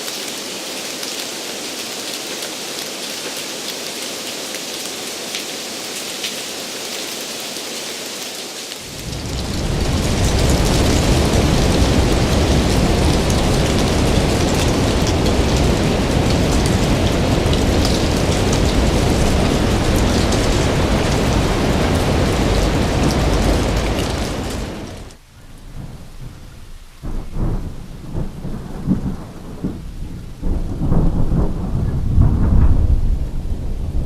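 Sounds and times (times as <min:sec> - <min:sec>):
heavy rain pouring: 0:00.0 - 0:34.0
thunder crackles: 0:08.8 - 0:34.0
thunder rumbling: 0:08.9 - 0:34.0.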